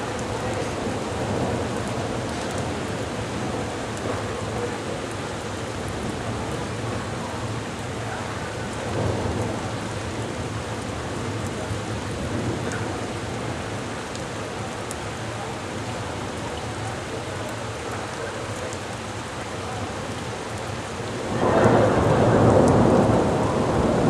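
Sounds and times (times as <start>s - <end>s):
heavy rain pouring: 0.0s - 24.0s
low thunder rumbling: 21.2s - 24.0s.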